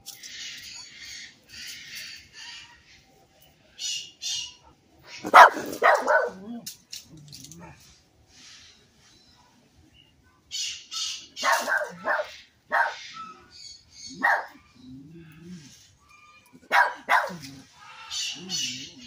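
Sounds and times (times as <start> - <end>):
dog barking: 5.2 - 6.6, 11.4 - 13.0, 14.1 - 14.6, 16.7 - 17.5.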